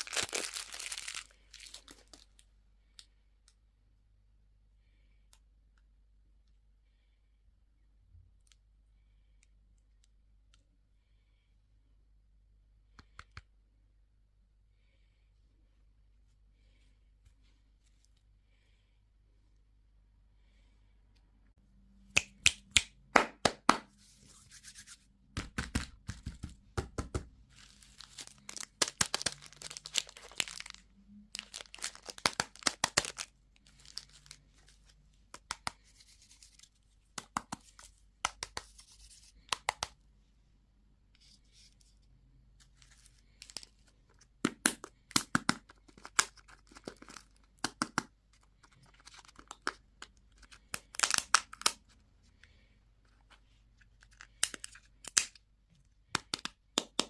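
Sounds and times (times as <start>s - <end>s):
candy wrappers crinkling: 0.0s - 2.5s, 27.5s - 37.7s, 44.6s - 52.0s.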